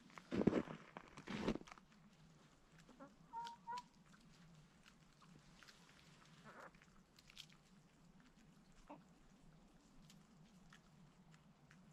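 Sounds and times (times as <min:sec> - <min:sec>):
rustle: 0:00.0 - 0:11.9
chickens clucking softly: 0:02.7 - 0:07.2, 0:08.0 - 0:11.6.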